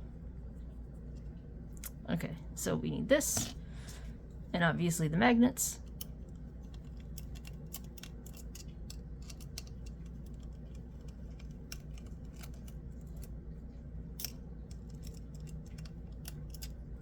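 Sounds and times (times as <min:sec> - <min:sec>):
steady low hum: 0:00.0 - 0:17.0
metal tools clicking and tapping: 0:05.8 - 0:13.3, 0:14.2 - 0:17.0.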